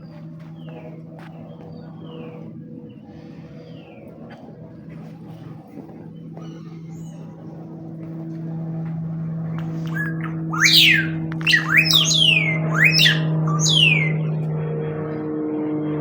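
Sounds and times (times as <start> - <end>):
steady low hum: 0.0 - 16.0
bird whistled calls: 9.6 - 14.4.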